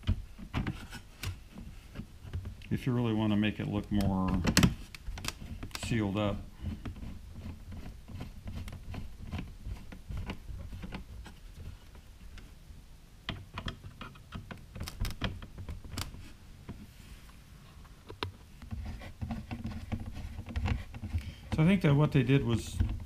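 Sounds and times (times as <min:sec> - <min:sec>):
plastic parts clicking: 0:03.8 - 0:05.9, 0:13.3 - 0:16.2.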